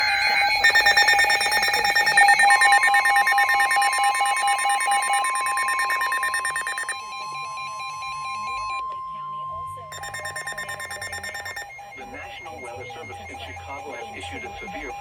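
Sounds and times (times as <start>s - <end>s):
pulsed alert beeps: 0.0s - 8.9s, 9.7s - 15.0s
steady warning alarm tone: 0.0s - 15.0s.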